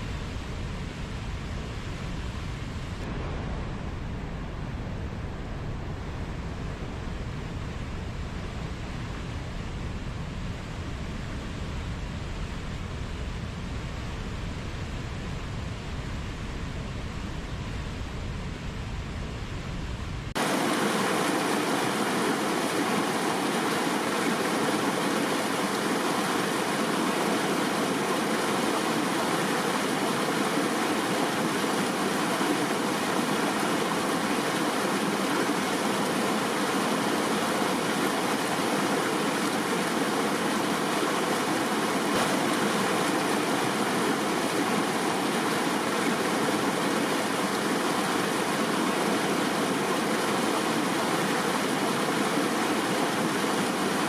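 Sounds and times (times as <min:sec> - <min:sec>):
river water flowing: 0:20.4 - 0:54.0.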